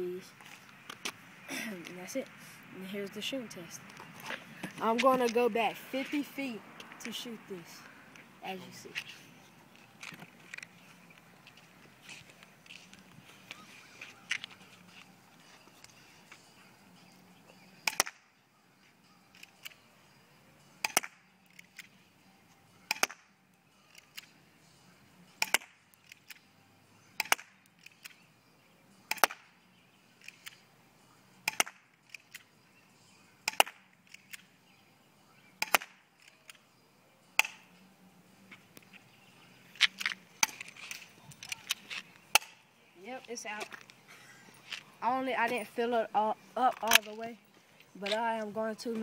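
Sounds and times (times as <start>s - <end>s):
pistol slide racking clicks: 19.3s - 19.8s, 23.9s - 24.3s, 25.4s - 26.4s, 27.2s - 28.2s
spring pistol shots: 33.5s - 33.8s, 35.6s - 36.0s.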